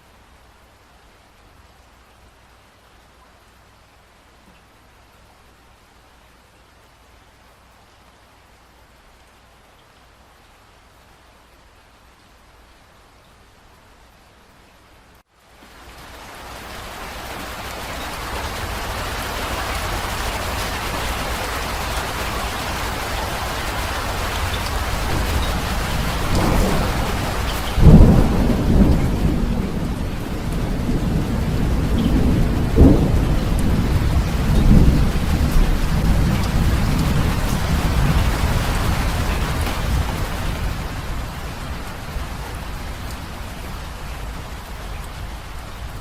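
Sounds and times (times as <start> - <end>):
heavy rain: 0.0 - 46.0
thunder rumbling: 18.4 - 46.0
loud thunderclap: 24.4 - 41.2.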